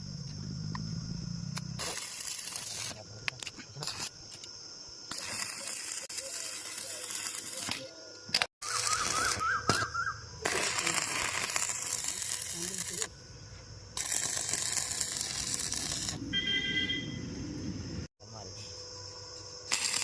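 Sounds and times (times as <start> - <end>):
welding arc hissing and crackling: 1.5 - 13.2, 13.9 - 16.2, 19.6 - 20.0.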